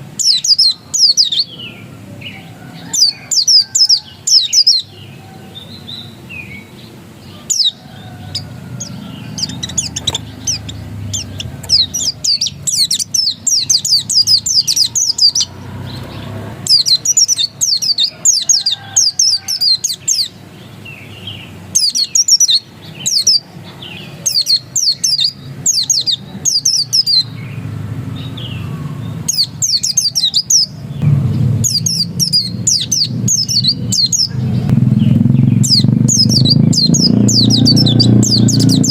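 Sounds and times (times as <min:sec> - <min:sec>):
bird twittering song: 0:00.0 - 0:38.9
steady low hum: 0:07.8 - 0:16.6, 0:30.8 - 0:37.3.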